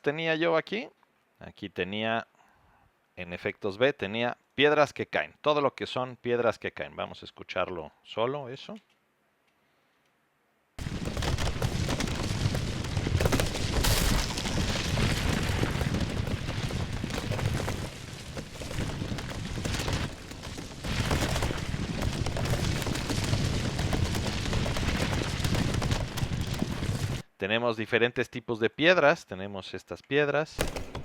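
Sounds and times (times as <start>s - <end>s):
rocks tumbling and crashing: 10.8s - 27.2s.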